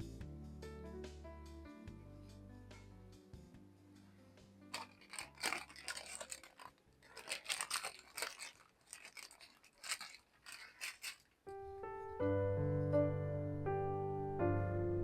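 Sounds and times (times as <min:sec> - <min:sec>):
soft background music: 0:00.0 - 0:06.2, 0:11.5 - 0:15.0
crisp crunching: 0:04.7 - 0:11.5.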